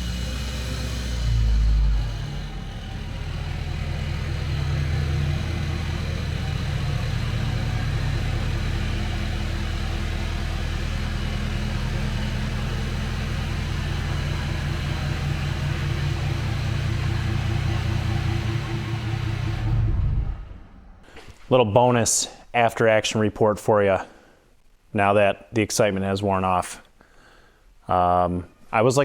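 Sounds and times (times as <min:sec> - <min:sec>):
tractor diesel engine idling: 0:00.0 - 0:21.0.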